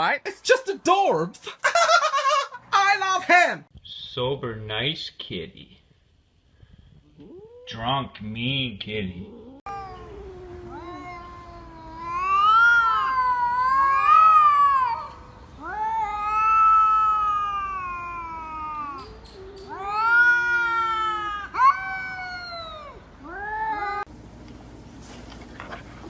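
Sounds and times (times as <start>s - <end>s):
cat yowling: 7.2s - 7.8s, 9.2s - 24.1s.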